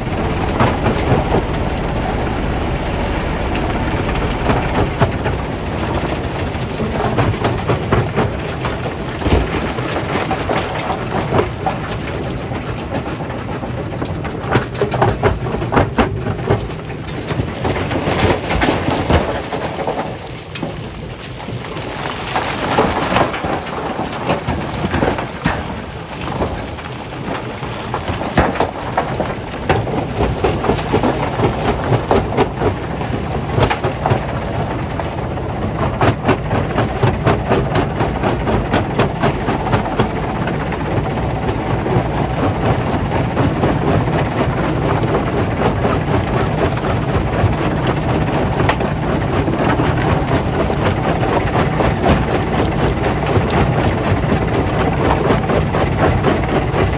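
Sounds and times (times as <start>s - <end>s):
low machine hum: 0.0s - 11.6s, 27.4s - 56.9s
rock crushing machinery rumble: 0.0s - 56.9s.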